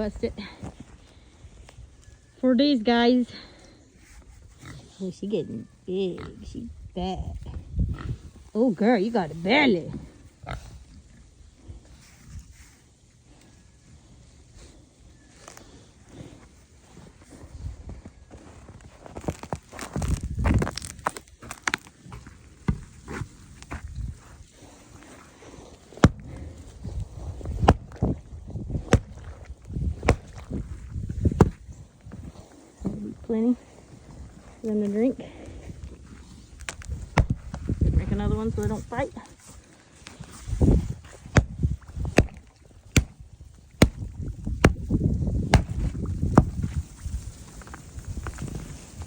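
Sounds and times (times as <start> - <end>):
scuffing and shuffling: 15.3 - 43.2
ice crunching and shifting: 15.3 - 49.0
strikes on ice: 43.8 - 46.8.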